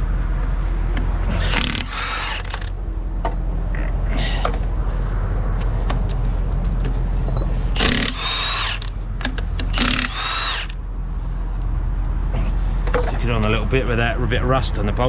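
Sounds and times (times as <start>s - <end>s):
steady low hum: 0.0s - 15.0s
power tool whirring: 1.0s - 2.8s, 7.7s - 10.8s.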